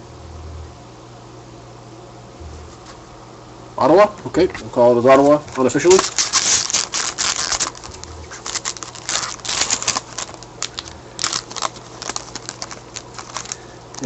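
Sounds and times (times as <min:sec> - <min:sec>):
cards rustling and clicking: 0:05.1 - 0:14.0.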